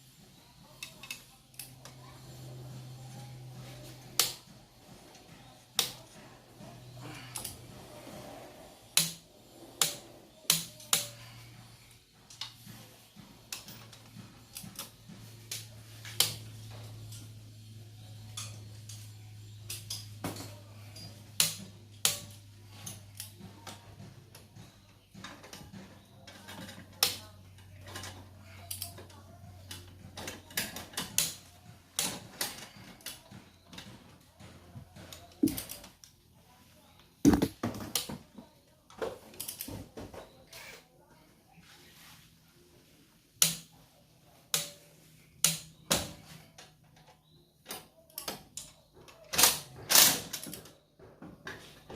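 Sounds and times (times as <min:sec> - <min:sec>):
clicks and knocks of tools: 0:00.8 - 0:02.0.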